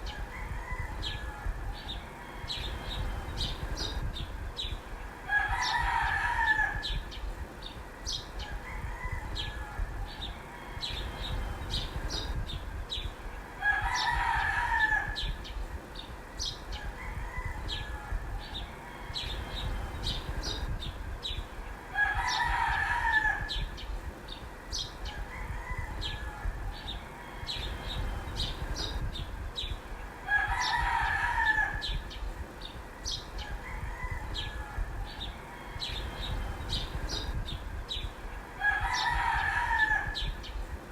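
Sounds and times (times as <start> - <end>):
rooster crowing: 0.0 - 3.1, 5.3 - 7.1, 8.4 - 11.4, 13.6 - 15.4, 16.7 - 19.7, 21.9 - 23.8, 25.0 - 28.0, 30.2 - 32.1, 33.0 - 36.4, 38.6 - 40.4.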